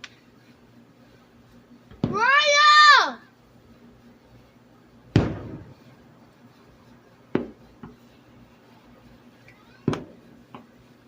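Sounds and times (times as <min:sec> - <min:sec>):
fireworks bangs: 0:01.9 - 0:02.5, 0:05.1 - 0:06.6, 0:07.2 - 0:08.8, 0:09.6 - 0:10.8.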